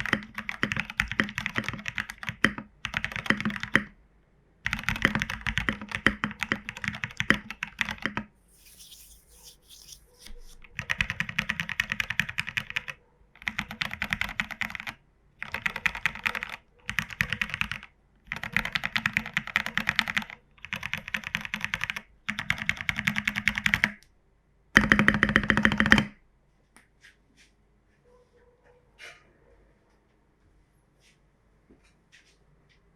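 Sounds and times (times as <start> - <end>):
mechanical keyboard typing: 0.0 - 3.9, 4.6 - 10.0, 10.7 - 24.0, 24.8 - 26.1.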